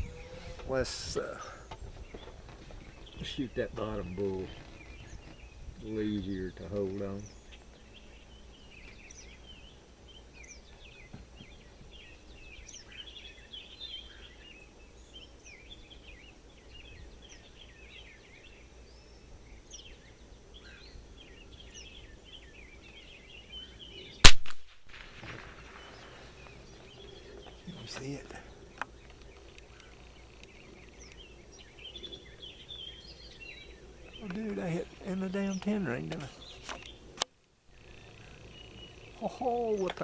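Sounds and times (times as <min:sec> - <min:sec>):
birds chirping: 0:00.0 - 0:40.0
rifle shot: 0:24.2 - 0:25.8.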